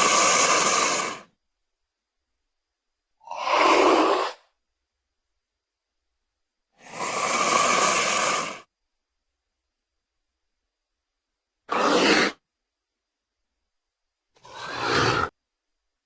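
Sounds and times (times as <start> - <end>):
breathy snake hissing: 0.0 - 1.3, 3.2 - 4.5, 6.8 - 8.7, 11.7 - 12.4, 14.4 - 15.4.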